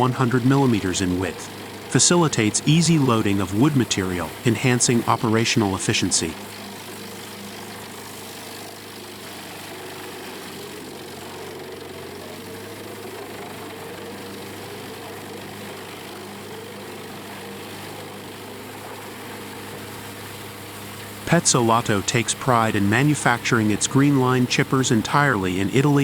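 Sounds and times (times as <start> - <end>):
diesel engine droning: 0.0 - 6.4, 21.3 - 26.0.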